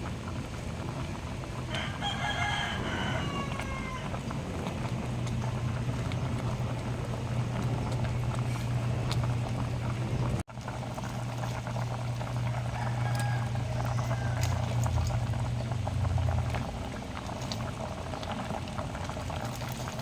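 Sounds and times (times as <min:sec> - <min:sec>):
rooster crowing: 0:01.7 - 0:04.3, 0:12.4 - 0:15.4
steady low hum: 0:04.0 - 0:20.0.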